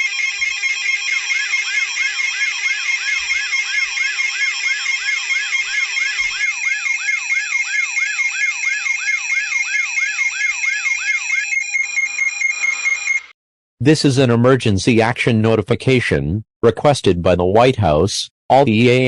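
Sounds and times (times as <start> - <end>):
electronic siren yelp: 0.0 - 13.4
high beeping tones: 11.2 - 13.3.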